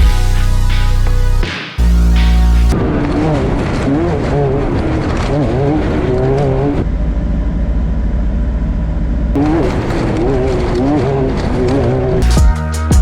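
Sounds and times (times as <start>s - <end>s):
music: 0.0s - 2.8s, 12.2s - 13.0s
vehicle engine revving: 2.9s - 12.4s.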